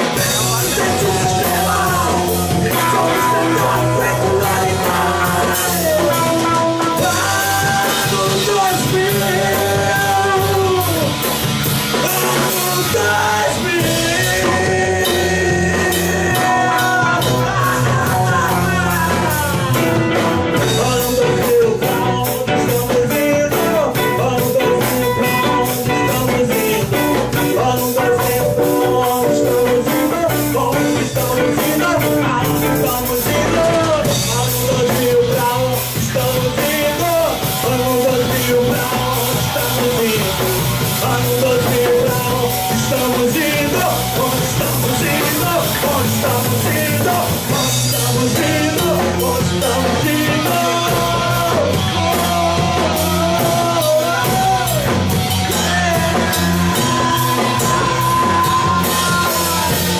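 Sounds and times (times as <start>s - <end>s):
bending lead melody: 0.0s - 59.9s
drum kit beat: 0.0s - 59.9s
rock band playing: 0.0s - 59.9s.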